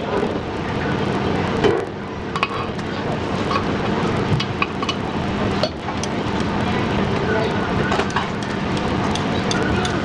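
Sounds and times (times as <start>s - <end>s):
busy street noise: 0.0s - 10.0s
utensils and dishes clinking: 7.6s - 10.0s.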